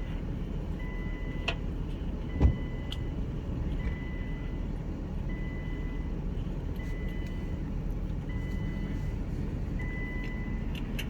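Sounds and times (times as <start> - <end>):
car engine rumbling: 0.0 - 11.0
high warning beep: 9.8 - 10.6.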